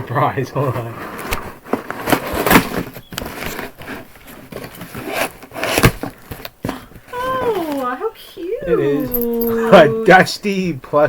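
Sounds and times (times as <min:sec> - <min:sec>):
packaging rustling and scraping: 0:00.6 - 0:07.9.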